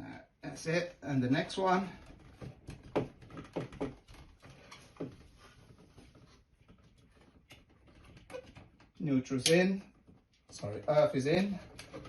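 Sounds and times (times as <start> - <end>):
cable clicks and rustles: 1.4 - 12.0.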